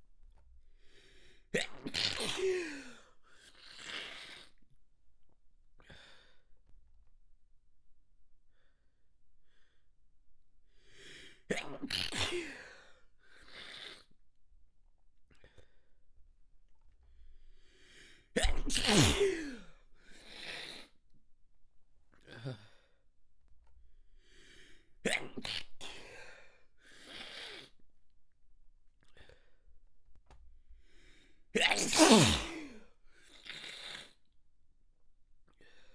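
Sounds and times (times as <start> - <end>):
person sneezing: 1.6 - 2.9, 18.4 - 19.7, 31.6 - 32.8.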